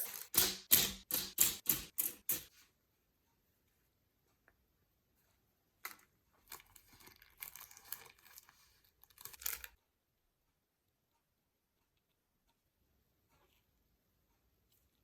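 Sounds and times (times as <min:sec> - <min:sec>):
plastic wrapping crinkling and tearing: 0:06.4 - 0:09.8.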